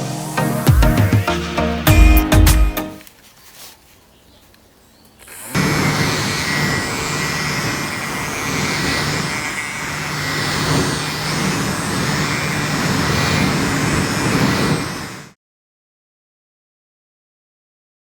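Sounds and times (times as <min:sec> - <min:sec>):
electric fan blowing air: 0:05.2 - 0:15.4.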